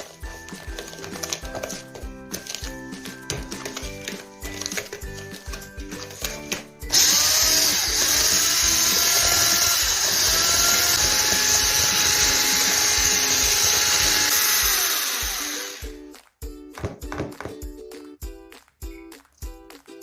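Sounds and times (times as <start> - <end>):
background music: 0.0 - 20.0
electric hand mixer running: 6.9 - 15.9.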